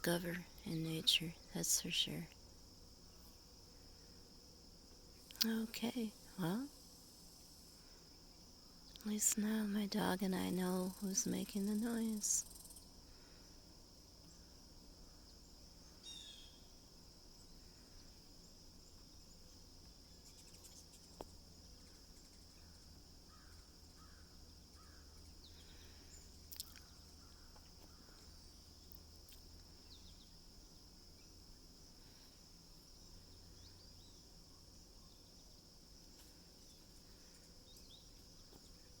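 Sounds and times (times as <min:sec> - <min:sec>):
insect chorus buzzing: 0:00.0 - 0:39.0
faint clicks: 0:26.5 - 0:28.3.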